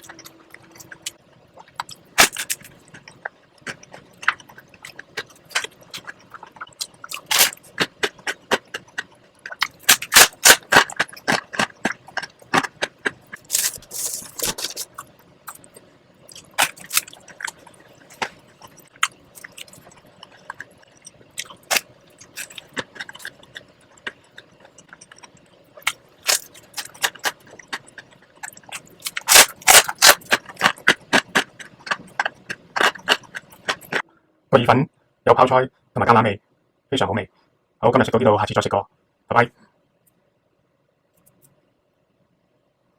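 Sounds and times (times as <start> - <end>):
chewing: 0.0 - 34.0.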